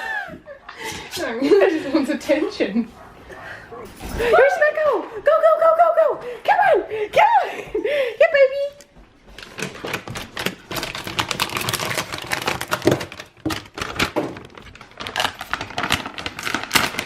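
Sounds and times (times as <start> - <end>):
dogs' feet scrabbling on hard floor: 8.8 - 17.0.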